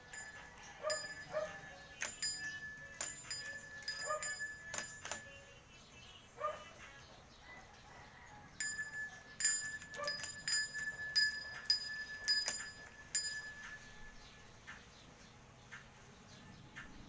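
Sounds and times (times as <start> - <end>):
small metal bells dinging: 0.0 - 5.8, 8.4 - 14.4.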